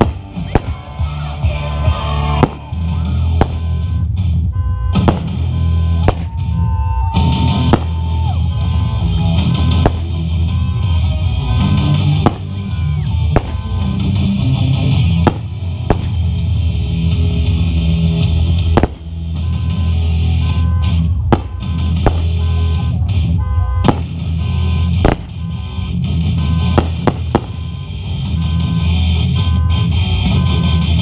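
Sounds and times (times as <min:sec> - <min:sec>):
fireworks bursting: 0:00.0 - 0:01.4, 0:02.1 - 0:03.8, 0:05.0 - 0:06.5, 0:07.3 - 0:08.2, 0:09.6 - 0:10.2, 0:11.7 - 0:12.8, 0:13.4 - 0:14.0, 0:15.2 - 0:16.4, 0:18.7 - 0:19.2, 0:21.3 - 0:22.4, 0:23.8 - 0:24.4, 0:25.0 - 0:25.5, 0:26.6 - 0:27.7
loud rock music: 0:00.0 - 0:31.0.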